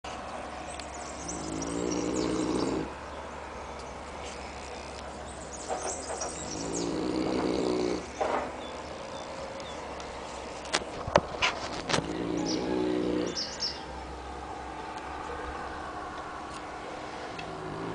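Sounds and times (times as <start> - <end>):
dog snoring: 1.2 - 3.0, 6.5 - 8.2, 12.0 - 13.4.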